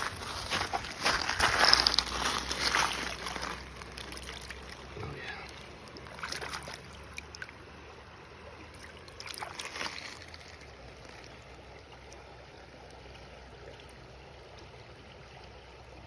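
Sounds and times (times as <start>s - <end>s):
stones clicking and scraping: 0.0s - 4.6s
creek water running: 0.0s - 16.0s.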